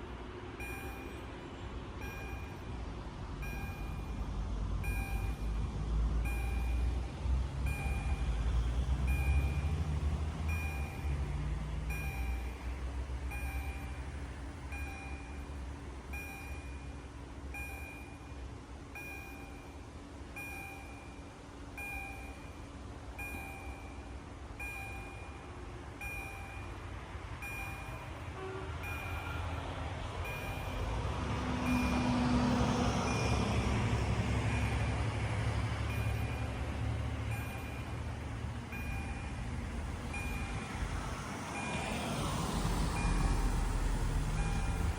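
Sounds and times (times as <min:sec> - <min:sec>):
railway crossing bell dinging: 0:00.0 - 0:44.9
road vehicle approaching: 0:00.0 - 0:44.9.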